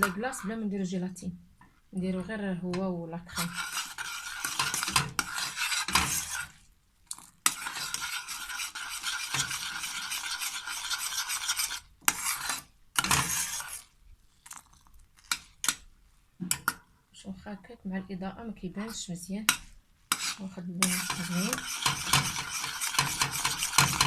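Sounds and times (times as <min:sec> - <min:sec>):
spoon scraping saucepan: 0:00.0 - 0:00.7, 0:02.7 - 0:06.6, 0:07.4 - 0:14.0, 0:18.8 - 0:24.0.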